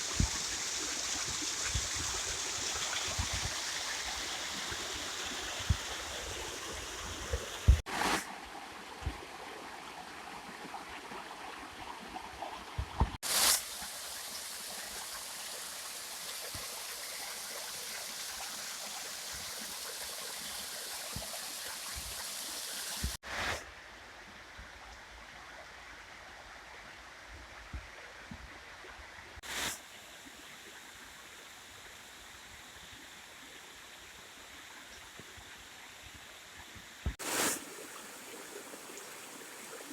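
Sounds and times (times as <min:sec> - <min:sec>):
waterfall rushing and splashing: 0:37.0 - 0:39.9.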